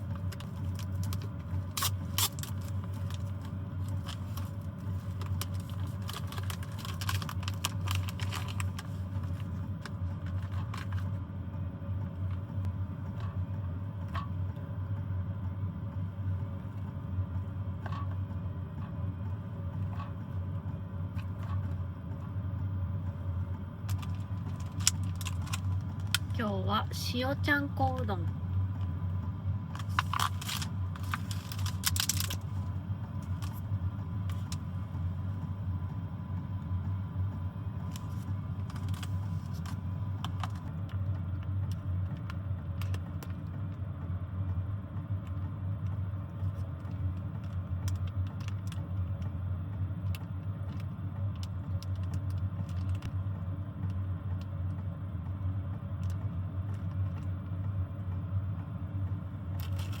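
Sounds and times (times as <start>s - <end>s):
rustles and clatters: 0.0s - 11.2s, 29.7s - 33.6s
steady low rumble: 0.0s - 60.0s.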